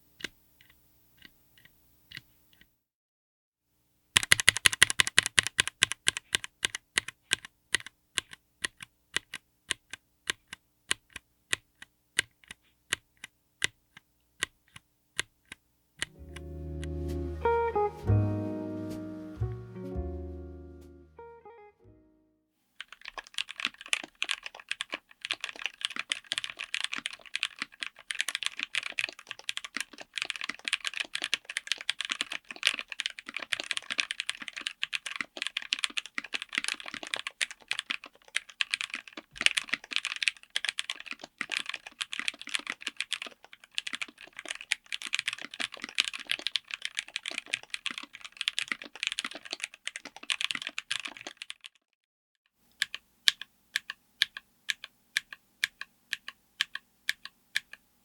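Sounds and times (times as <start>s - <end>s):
fast typing on mechanical keyboard: 4.2s - 16.2s, 22.8s - 51.8s, 52.7s - 57.8s.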